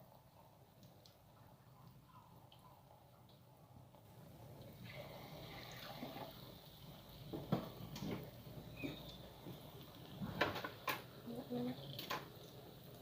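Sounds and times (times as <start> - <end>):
batter sizzling in a pan: 4.1 - 13.0.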